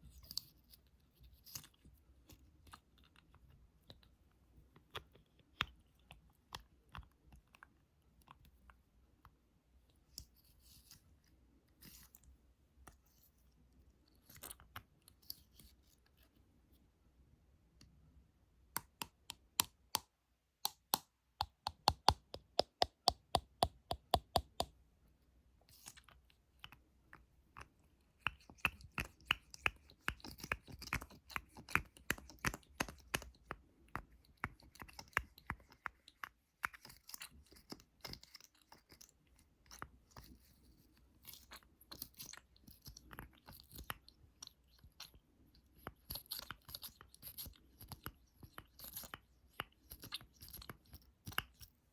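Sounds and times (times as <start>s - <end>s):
fingertips tapping: 18.8s - 24.8s.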